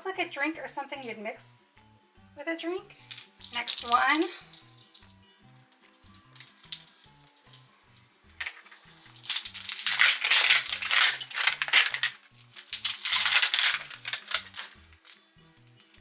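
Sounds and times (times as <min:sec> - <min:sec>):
soft background music: 0:00.0 - 0:16.0
plastic packaging crinkling: 0:03.0 - 0:15.2
small items clicking: 0:03.0 - 0:16.0.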